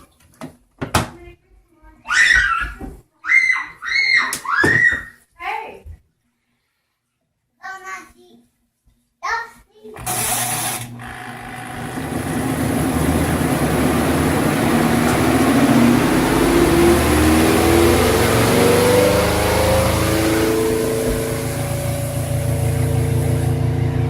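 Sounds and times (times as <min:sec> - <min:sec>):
spin dryer whirring and whining: 0:10.0 - 0:24.0.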